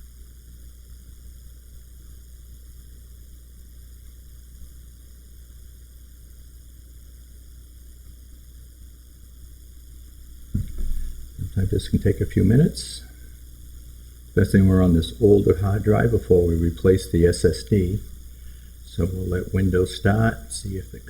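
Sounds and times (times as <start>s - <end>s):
steady hiss: 0.0s - 21.0s
low hum: 10.2s - 21.0s
brief knock: 10.5s - 11.2s.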